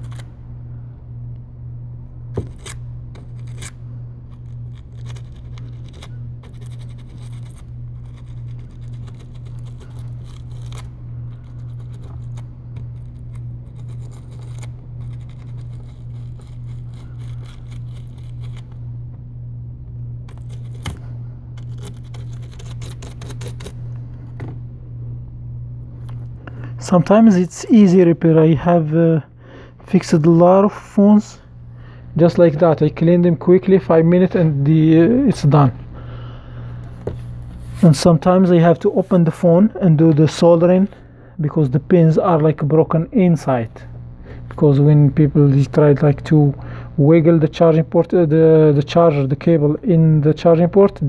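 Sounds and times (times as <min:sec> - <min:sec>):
steady low hum: 0:00.0 - 0:51.0
metal tweezers scraping and clicking: 0:02.6 - 0:18.7, 0:21.6 - 0:23.7.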